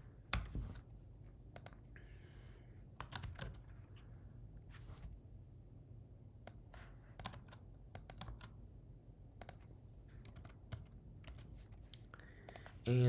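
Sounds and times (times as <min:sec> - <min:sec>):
faint keyboard typing: 0:00.1 - 0:02.0, 0:02.9 - 0:04.1, 0:06.4 - 0:08.7, 0:09.3 - 0:12.8.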